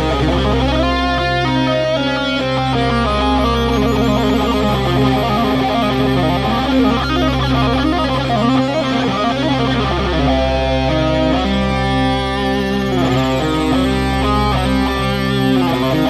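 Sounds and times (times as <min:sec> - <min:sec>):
guitar melody with quick runs: 0:00.0 - 0:16.0
sustained low drone note: 0:06.2 - 0:14.9.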